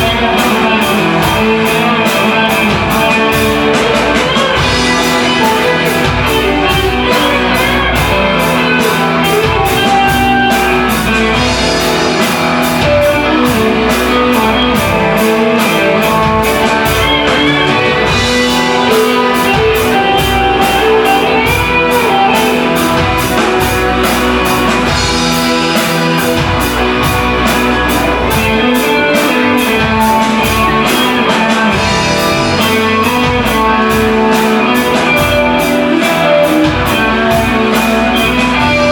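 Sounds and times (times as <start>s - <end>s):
bass: 0.0s - 38.9s
drum kit: 0.0s - 38.9s
electric guitars: 0.0s - 38.9s
steady cymbal beat: 0.0s - 38.9s.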